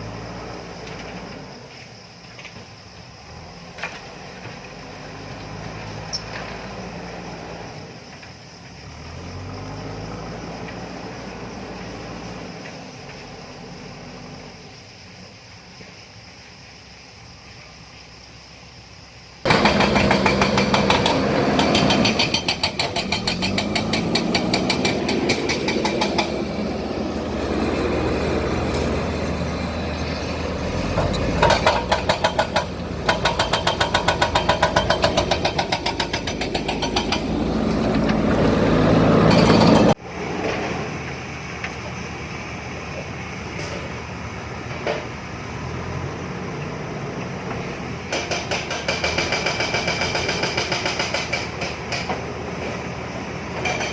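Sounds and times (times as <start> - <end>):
rapid even clatter: 19.5 - 26.9, 30.6 - 38.3
diesel engine working under load: 19.5 - 53.9.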